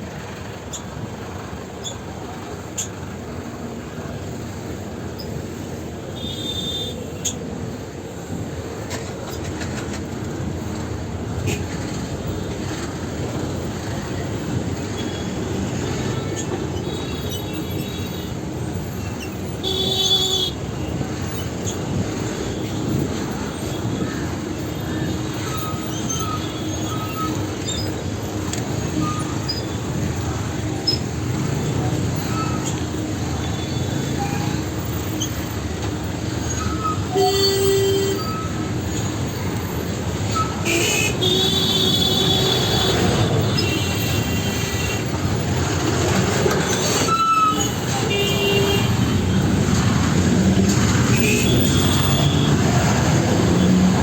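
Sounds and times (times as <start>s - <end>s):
street traffic noise: 0.0s - 54.0s
high-pitched vehicle horns: 6.2s - 7.4s, 19.4s - 21.0s, 36.4s - 45.5s, 46.7s - 53.9s.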